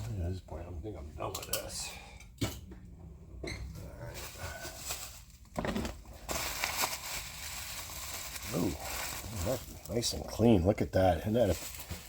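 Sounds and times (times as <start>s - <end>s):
plastic packaging crinkling: 4.1s - 10.4s, 11.0s - 12.0s.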